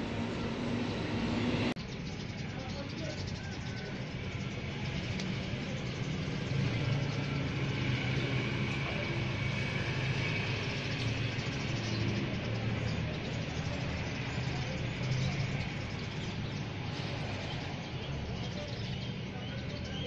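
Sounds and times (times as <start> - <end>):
vehicle engine running: 0.0 - 1.8.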